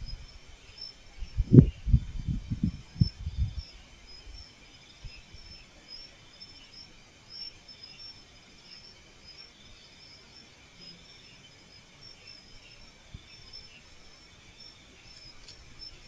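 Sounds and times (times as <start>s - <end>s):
night insects chirping: 0.0s - 16.0s.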